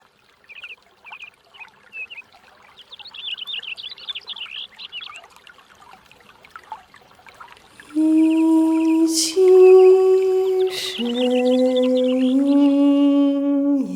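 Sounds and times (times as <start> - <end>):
small birds chirping: 0.4 - 5.4, 7.8 - 13.9
low humming voice: 7.8 - 13.9.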